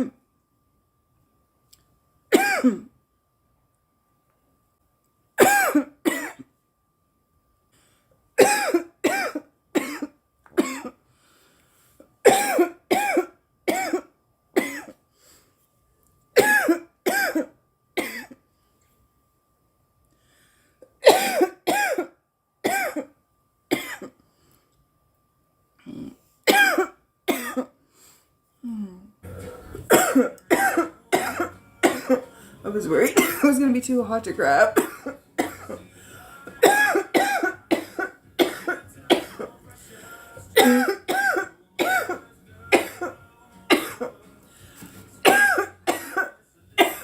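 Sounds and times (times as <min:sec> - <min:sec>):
woman coughing: 0:02.3 - 0:02.9, 0:05.4 - 0:06.5, 0:08.4 - 0:11.0, 0:12.2 - 0:15.0, 0:16.4 - 0:18.4, 0:21.0 - 0:23.1, 0:23.7 - 0:24.1, 0:26.5 - 0:27.8, 0:29.6 - 0:35.8, 0:36.6 - 0:39.5, 0:40.6 - 0:44.2, 0:45.2 - 0:47.0.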